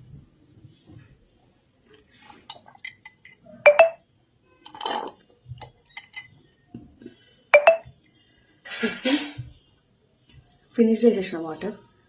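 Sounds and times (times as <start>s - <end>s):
drinking glass clinking: 2.5s - 4.0s, 7.6s - 7.9s.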